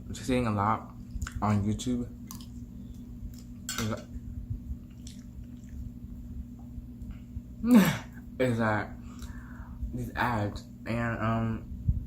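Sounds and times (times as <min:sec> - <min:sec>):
steady low hum: 0:00.0 - 0:12.0
chewing: 0:02.2 - 0:03.6, 0:04.8 - 0:05.9.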